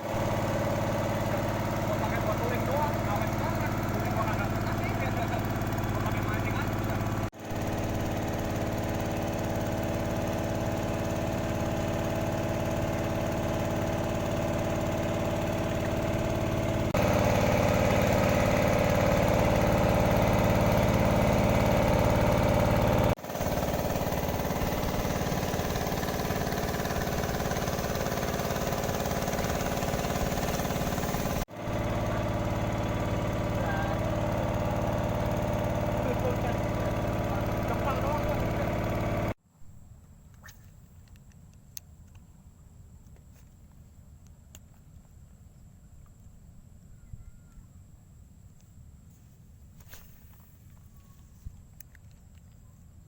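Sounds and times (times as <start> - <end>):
engine running steadily: 0.0 - 39.4.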